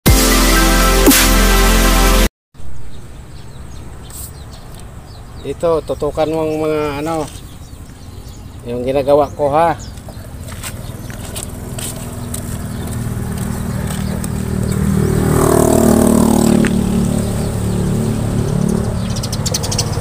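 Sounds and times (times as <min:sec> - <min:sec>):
vehicle engine running: 0:09.8 - 0:20.0.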